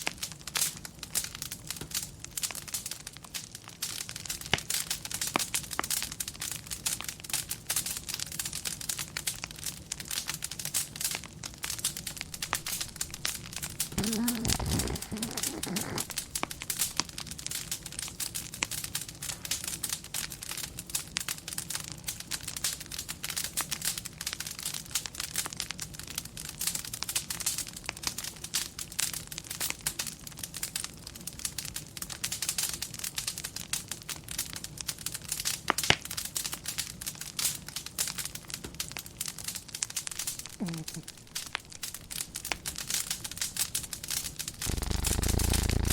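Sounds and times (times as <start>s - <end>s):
wood fire crackling and popping: 0.0s - 45.9s
dog snoring: 12.3s - 17.0s, 44.2s - 45.9s.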